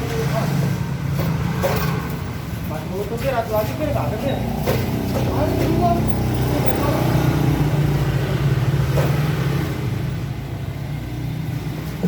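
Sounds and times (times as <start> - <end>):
vehicle engine running: 3.6 - 12.0.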